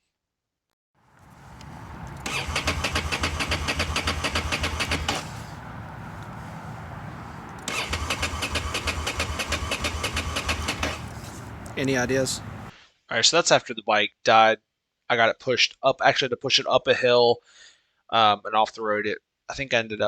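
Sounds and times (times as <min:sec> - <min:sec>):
motorcycle engine cranking: 0:01.3 - 0:05.6, 0:07.5 - 0:12.6.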